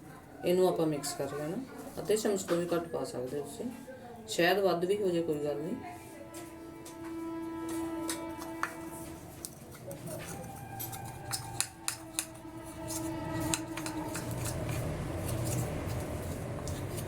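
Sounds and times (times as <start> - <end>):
metal spoon scraping a bowl: 7.6 - 17.0.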